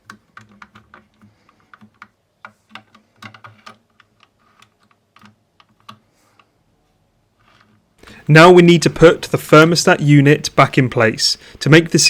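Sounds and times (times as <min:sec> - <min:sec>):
plastic parts clicking: 0:00.0 - 0:06.5.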